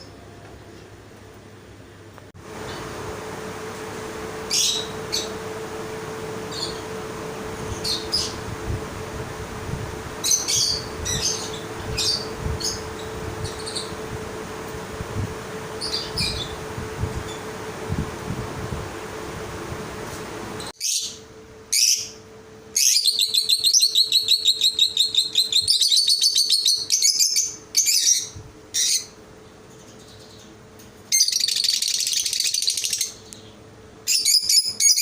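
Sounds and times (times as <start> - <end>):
steady low hum: 0.0 - 31.2
birds chirping and squawking: 4.4 - 5.5, 6.4 - 7.0, 7.6 - 8.5, 10.2 - 14.3, 15.7 - 17.6, 22.8 - 35.0.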